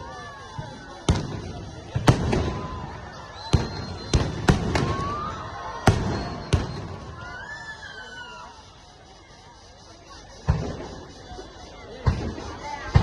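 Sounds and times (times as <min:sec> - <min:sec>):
fireworks bangs with rumble: 0:00.5 - 0:07.3, 0:10.4 - 0:11.2, 0:12.0 - 0:13.0.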